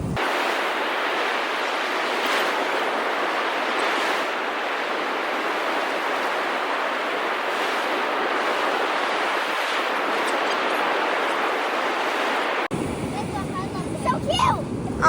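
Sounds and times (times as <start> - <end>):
ocean surf washing onto beach: 0.0 - 15.0.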